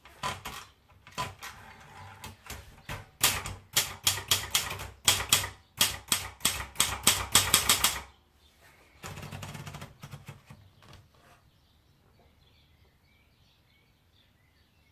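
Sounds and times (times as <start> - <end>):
typewriter rattle: 0.0 - 8.1, 9.0 - 10.6
typewriter key strikes: 2.9 - 8.1.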